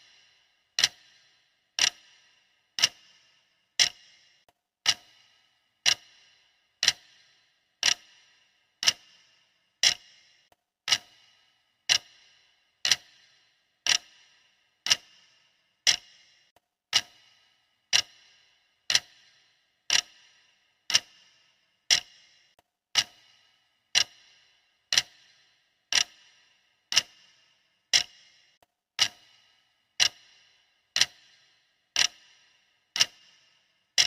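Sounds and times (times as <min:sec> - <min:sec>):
clock ticking: 0:00.0 - 0:34.0.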